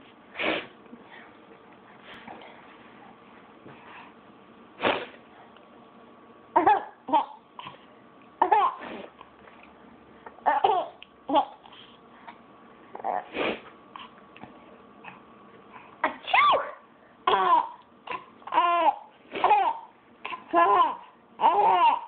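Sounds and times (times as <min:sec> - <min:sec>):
baby laughing: 0:06.6 - 0:07.4, 0:08.4 - 0:08.9, 0:10.4 - 0:11.6, 0:17.3 - 0:22.0.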